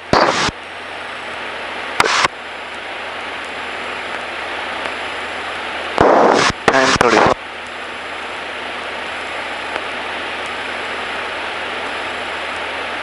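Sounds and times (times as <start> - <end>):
aircraft engine drone: 0.0 - 13.0
short bursts of noise: 0.1 - 0.6, 2.0 - 2.4, 6.0 - 7.4.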